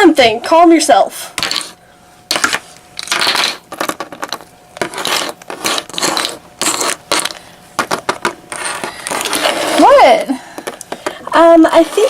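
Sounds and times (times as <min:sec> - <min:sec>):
small hard containers clattering: 0:02.3 - 0:05.3.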